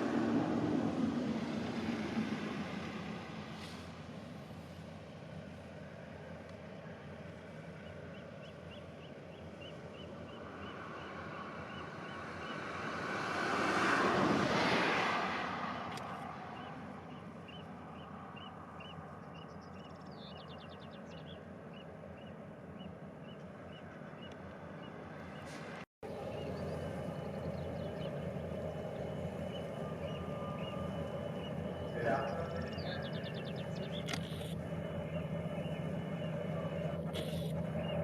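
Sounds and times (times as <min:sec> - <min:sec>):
vehicle passing close: 0:10.3 - 0:17.1
faint high chirp: 0:26.2 - 0:38.0.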